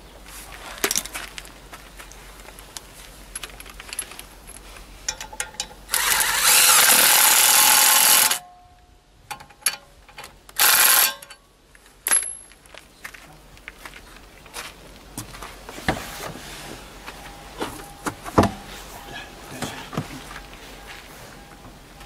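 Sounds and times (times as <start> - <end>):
impact wrench bursts: 5.9 - 8.4, 10.6 - 11.4.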